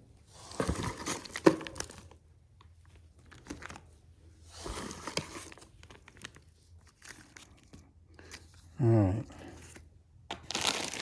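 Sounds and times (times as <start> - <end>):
plastic bags crinkling: 0.4 - 2.2, 10.3 - 11.0.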